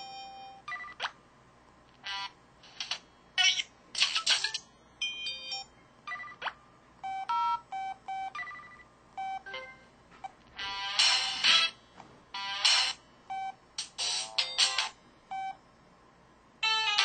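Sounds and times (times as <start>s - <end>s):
phone electronic beeps and chimes: 5.0s - 10.8s.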